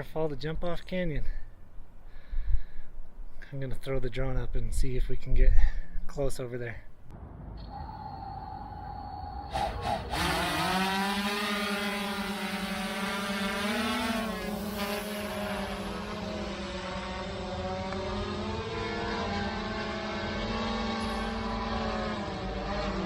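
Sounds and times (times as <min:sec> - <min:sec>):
steady tone: 0:07.1 - 0:16.1
drone propeller hum: 0:07.1 - 0:18.8.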